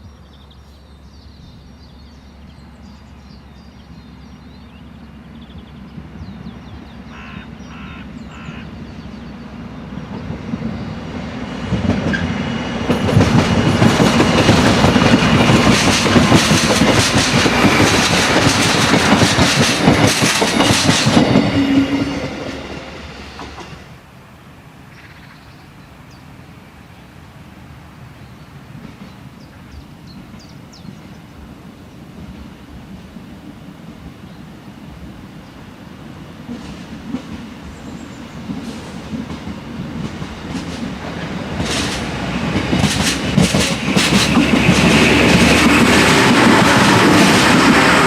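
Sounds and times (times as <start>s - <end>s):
railcar wheels clattering over points: 9.8s - 23.9s, 36.4s - 48.0s.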